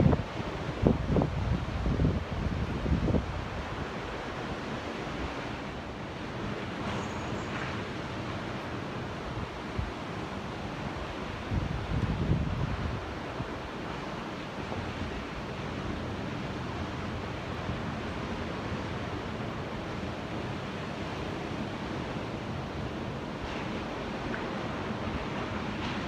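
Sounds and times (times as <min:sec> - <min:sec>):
ocean waves washing: 0:00.0 - 0:26.0.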